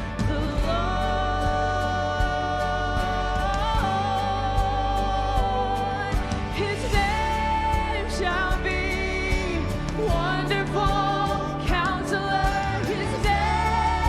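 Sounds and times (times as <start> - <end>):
drums keeping a steady beat: 0.0 - 14.0
person singing: 0.0 - 14.0
worship band music: 0.0 - 14.0.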